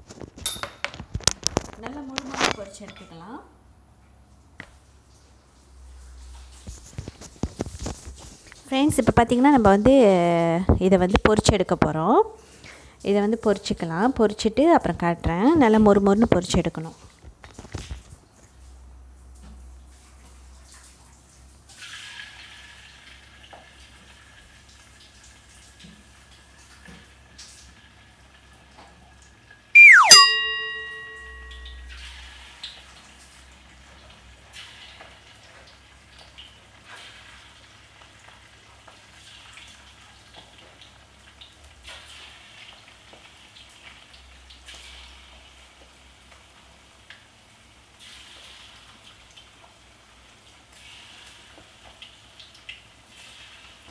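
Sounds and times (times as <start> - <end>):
chicken sizzling in hot oil: 21.2 - 29.7, 30.3 - 53.9
low steady hum: 29.8 - 32.0.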